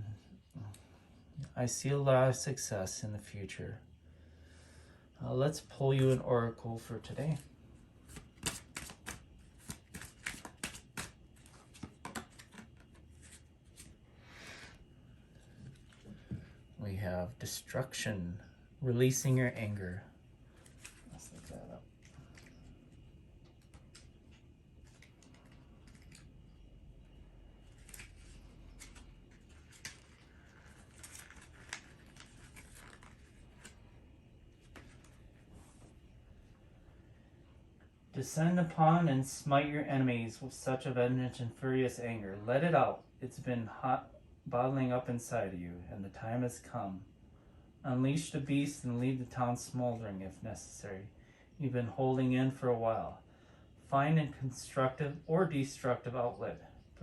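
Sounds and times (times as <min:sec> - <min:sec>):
cards being shuffled: 0:07.3 - 0:14.0, 0:20.6 - 0:26.3, 0:27.6 - 0:33.9, 0:34.6 - 0:35.9
small objects rustling and clicking: 0:23.5 - 0:26.3.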